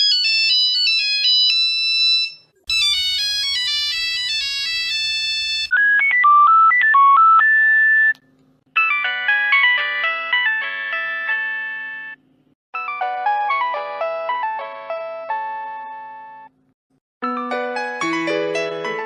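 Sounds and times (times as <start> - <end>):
mobile phone ringtone melodies: 0.0 - 8.1, 8.8 - 12.2, 12.8 - 16.5.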